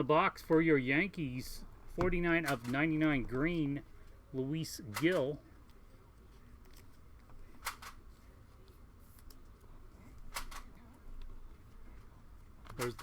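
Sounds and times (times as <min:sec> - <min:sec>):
cards rustling: 0:02.0 - 0:04.2, 0:04.8 - 0:10.7, 0:11.6 - 0:13.0
card clicking against card: 0:12.7 - 0:13.0.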